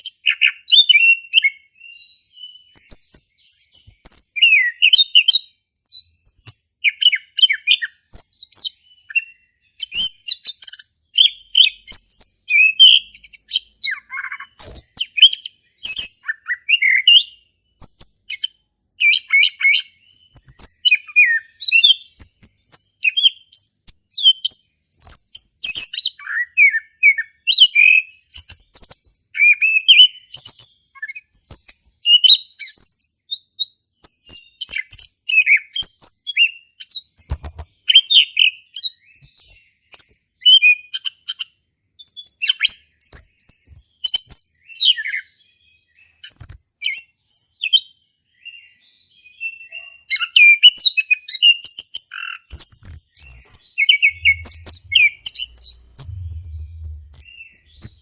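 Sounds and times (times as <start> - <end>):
thrush singing: 54.0 - 58.0.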